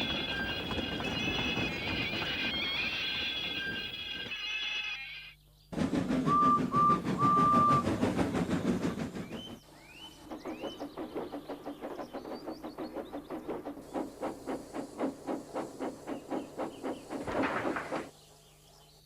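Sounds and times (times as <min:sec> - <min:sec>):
train rattling: 0:00.0 - 0:04.4, 0:05.7 - 0:18.2
rhythmic train clatter: 0:00.0 - 0:04.9, 0:05.7 - 0:18.2
train whistle toots: 0:06.3 - 0:07.9.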